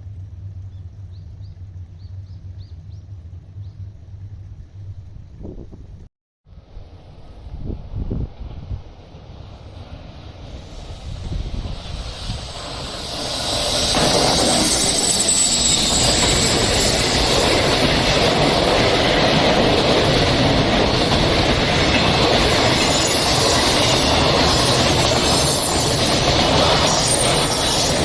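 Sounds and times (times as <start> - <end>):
train passing with rail noise: 0.0 - 28.0
high wheel squeal: 10.8 - 21.1, 21.7 - 28.0.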